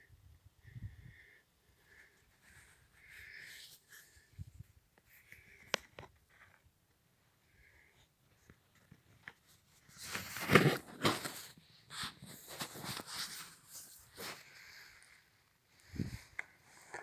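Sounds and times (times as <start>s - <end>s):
footsteps crunching on dry ground: 9.9s - 14.9s.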